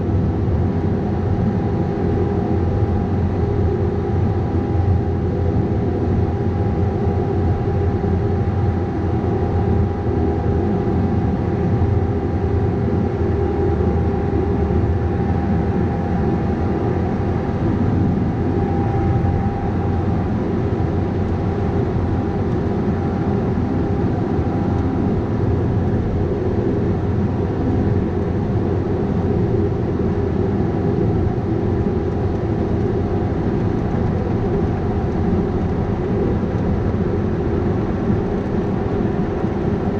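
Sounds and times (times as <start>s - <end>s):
thin steady whine: 0.0s - 39.9s
diesel engine running: 11.0s - 35.9s.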